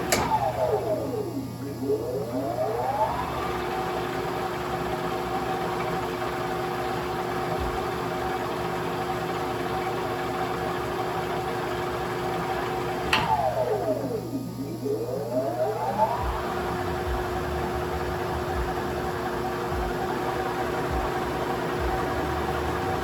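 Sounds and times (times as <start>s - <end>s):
lathe motor humming: 0.0s - 23.0s.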